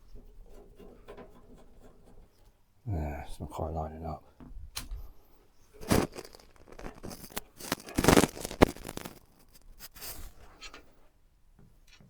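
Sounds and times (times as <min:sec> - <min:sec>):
computer parts scraping: 0:05.8 - 0:10.7.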